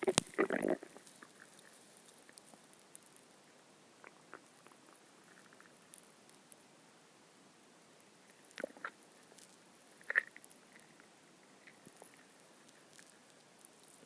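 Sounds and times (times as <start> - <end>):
stomach gurgling: 0.0 - 2.4, 4.0 - 6.0, 8.3 - 11.0.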